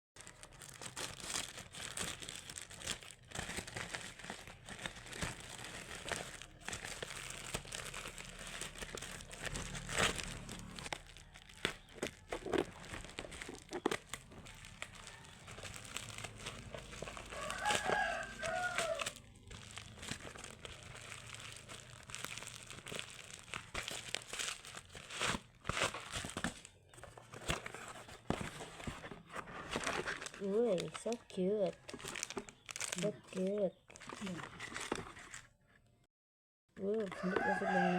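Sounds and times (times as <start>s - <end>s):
packaging crinkling and rustling: 0.2s - 35.6s, 37.1s - 37.9s
rooster crowing: 16.5s - 19.3s, 37.0s - 37.9s.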